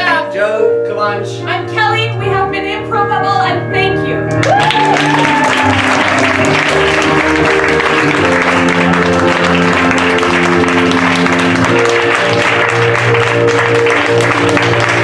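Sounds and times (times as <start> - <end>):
piano playing slow chords: 0.0 - 15.0
audience applause: 4.4 - 15.0.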